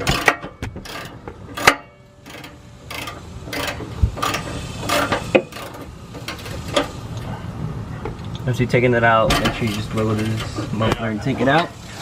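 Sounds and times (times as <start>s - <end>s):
ratchet wrench clicking: 0.0s - 7.1s
metal tools clanking: 9.2s - 11.8s.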